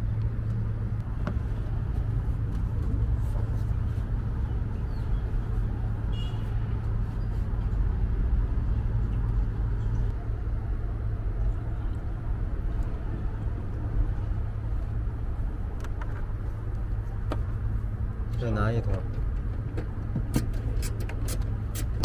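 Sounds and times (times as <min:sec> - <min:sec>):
motor vehicle rumble: 0:00.0 - 0:22.0.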